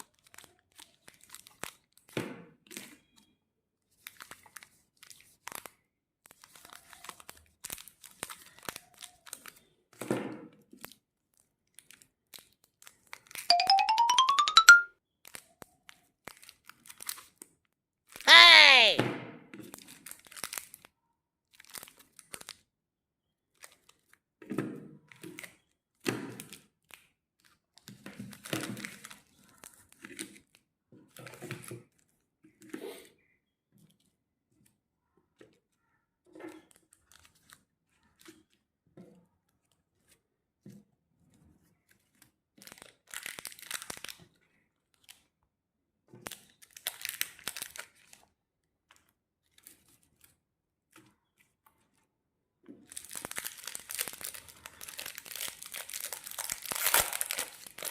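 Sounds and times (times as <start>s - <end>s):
candy wrappers tearing and crinkling: 6.3s - 9.6s, 15.3s - 17.3s, 19.8s - 20.9s, 21.5s - 22.6s, 42.6s - 44.3s, 46.3s - 48.2s, 52.9s - 57.9s.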